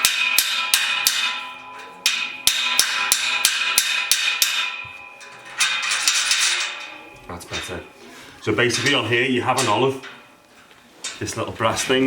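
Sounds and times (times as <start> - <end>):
metal taps ringing: 0.0 - 8.0
metal scraping: 0.0 - 12.0.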